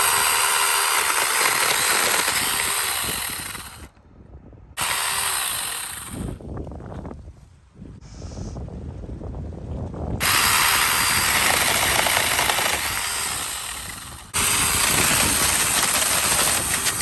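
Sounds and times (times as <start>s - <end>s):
mini chainsaw cutting wood: 0.0s - 3.9s, 4.8s - 6.4s, 10.2s - 17.0s.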